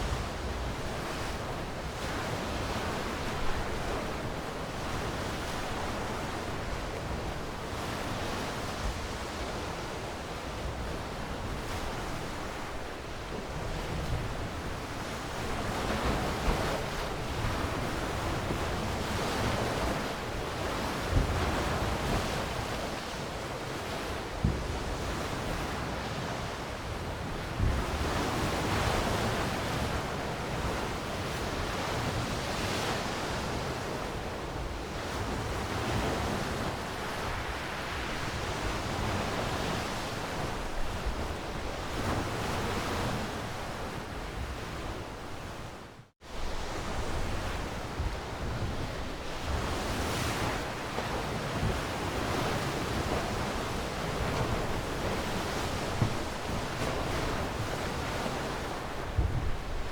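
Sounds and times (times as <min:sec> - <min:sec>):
ocean waves washing ashore: 0:00.0 - 0:59.9
wind thumps on microphone: 0:24.4 - 0:24.9, 0:54.1 - 0:59.9.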